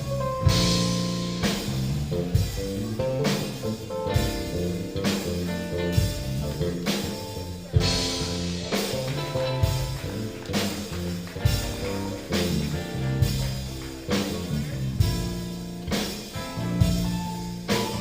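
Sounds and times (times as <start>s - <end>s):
drum kit beat: 0.0s - 18.0s
electric guitar notes: 0.0s - 18.0s.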